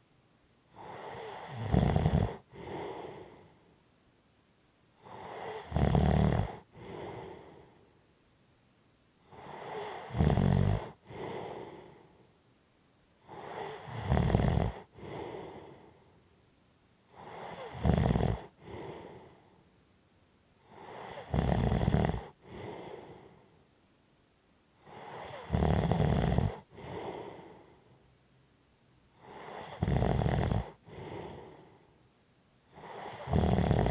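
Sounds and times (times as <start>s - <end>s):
person snoring: 0.7s - 3.5s, 5.0s - 7.8s, 9.3s - 12.1s, 13.3s - 16.0s, 17.2s - 19.4s, 20.7s - 23.4s, 24.8s - 27.8s, 29.2s - 31.8s, 32.7s - 33.9s.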